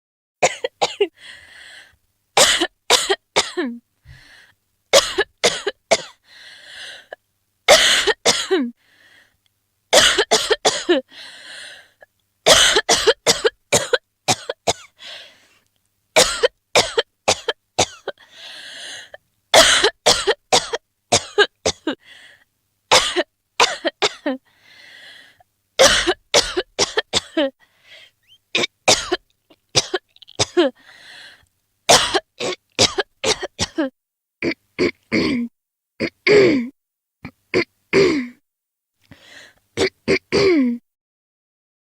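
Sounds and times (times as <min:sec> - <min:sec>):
woman coughing: 0:00.4 - 0:01.2, 0:02.4 - 0:03.8, 0:05.0 - 0:06.2, 0:07.7 - 0:08.7, 0:10.0 - 0:11.1, 0:12.5 - 0:15.0, 0:16.2 - 0:18.2, 0:19.6 - 0:22.0, 0:22.9 - 0:24.4, 0:25.8 - 0:27.6, 0:28.6 - 0:29.2, 0:29.8 - 0:30.8, 0:31.9 - 0:36.7, 0:37.6 - 0:38.4, 0:39.8 - 0:40.8.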